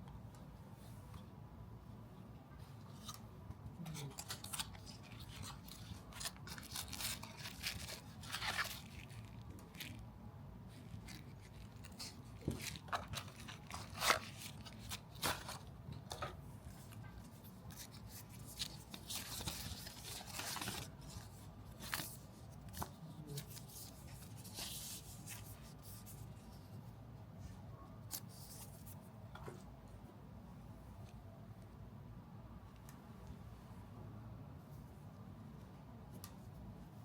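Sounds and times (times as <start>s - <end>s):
packaging tearing rustle: 4.1s - 10.0s, 10.9s - 15.7s, 17.7s - 25.6s.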